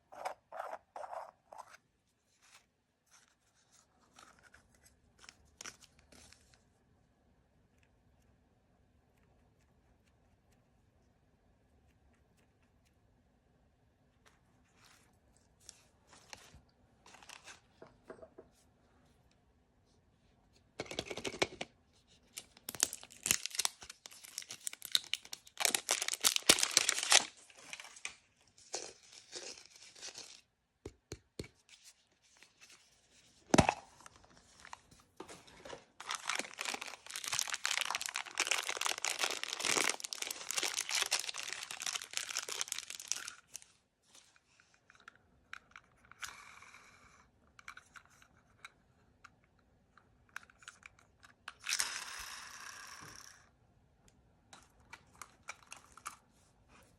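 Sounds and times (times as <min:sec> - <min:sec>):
plastic packaging tearing and crinkling: 0:22.6 - 0:28.1, 0:36.0 - 0:43.6.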